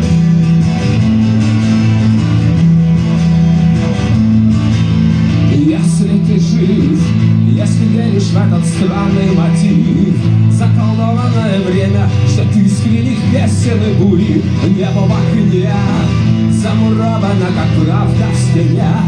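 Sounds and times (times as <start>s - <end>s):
strummed guitar: 0.0s - 19.0s
person singing: 5.4s - 19.0s.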